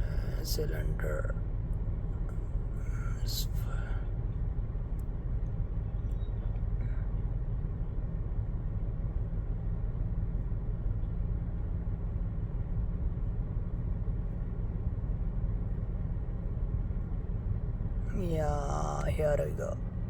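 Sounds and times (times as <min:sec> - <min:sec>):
car engine idling with misfire: 0:02.2 - 0:04.1.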